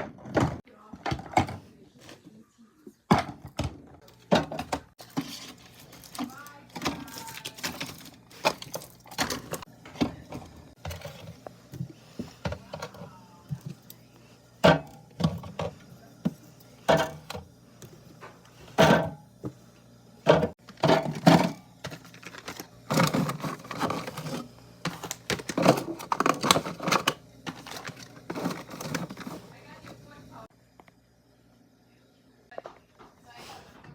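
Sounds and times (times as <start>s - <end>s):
cans and bottles clinking: 14.6s - 17.4s, 20.3s - 29.5s.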